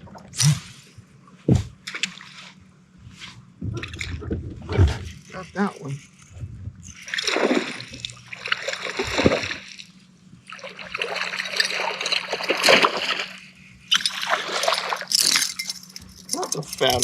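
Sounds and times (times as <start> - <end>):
fish thrashing water splashing: 7.0 - 9.9, 10.5 - 16.0.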